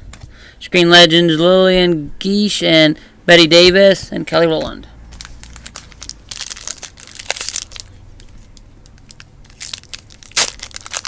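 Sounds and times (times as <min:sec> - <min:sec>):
plastic wrapper crinkling and tearing: 0:05.1 - 0:11.0.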